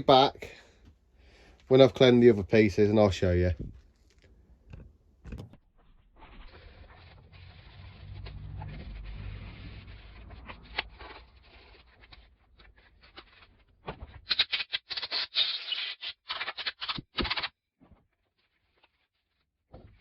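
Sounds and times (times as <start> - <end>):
scratching while handling a part: 1.6 - 20.0
rapid scratchy scrubbing strokes: 6.2 - 12.4
low rumble: 6.8 - 11.3.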